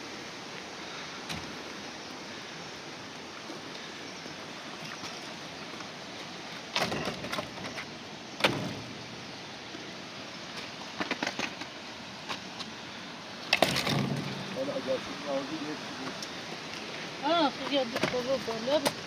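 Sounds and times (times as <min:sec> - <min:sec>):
steady background noise: 0:00.0 - 0:19.0
sharp knocks and clattering clicks: 0:10.6 - 0:12.4.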